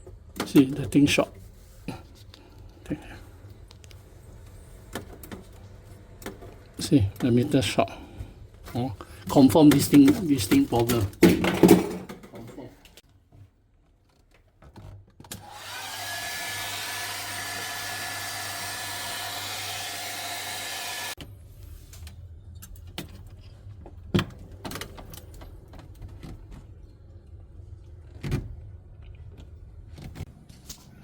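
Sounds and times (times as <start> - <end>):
electric fan motor whining: 15.4 - 21.2.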